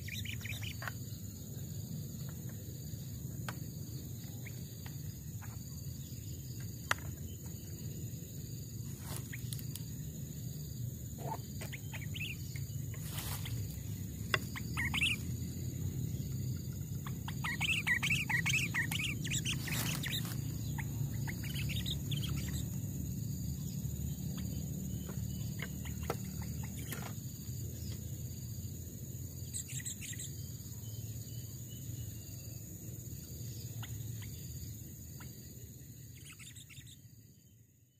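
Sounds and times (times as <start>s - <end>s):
bird chirping and warbling: 0.0s - 1.1s, 11.1s - 23.0s, 23.6s - 27.2s.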